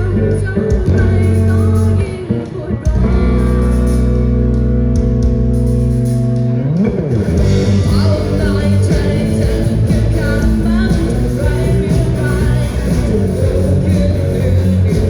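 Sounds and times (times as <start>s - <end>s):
live rock band playing: 0.7s - 15.0s
person singing: 7.6s - 15.0s.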